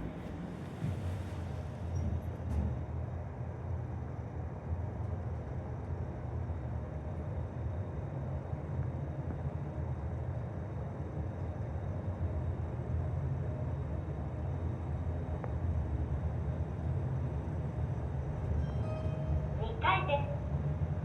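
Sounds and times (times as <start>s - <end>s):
elevator rumble and hum: 0.0s - 21.0s.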